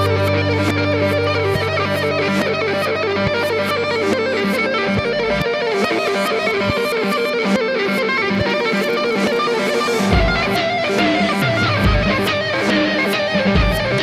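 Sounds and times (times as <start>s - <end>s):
guitar music: 0.0s - 14.0s
steady drum beat: 7.7s - 14.0s.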